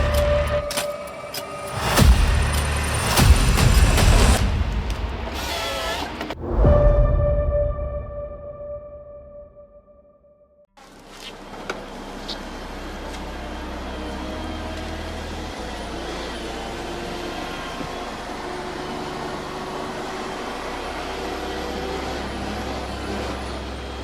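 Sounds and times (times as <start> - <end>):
heavy machine engine running: 0.0 - 6.2, 11.3 - 24.0.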